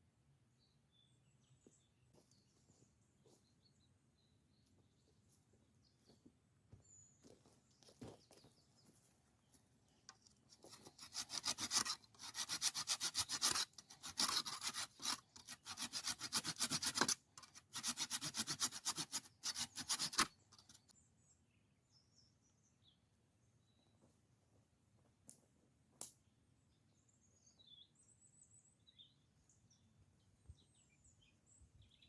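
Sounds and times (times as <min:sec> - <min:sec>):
rapid rasping strokes: 0:10.5 - 0:20.9.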